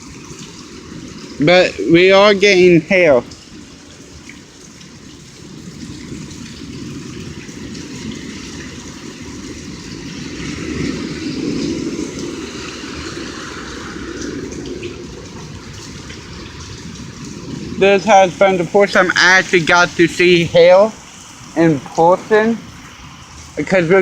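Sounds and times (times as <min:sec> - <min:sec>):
rain and hail falling: 0:00.0 - 0:24.0.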